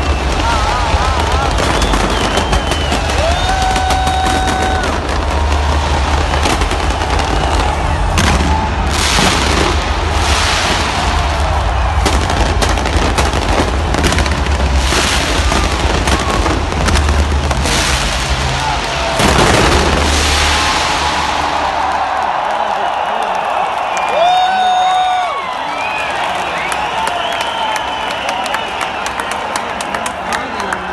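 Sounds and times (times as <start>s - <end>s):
fireworks exploding: 0.0s - 24.0s.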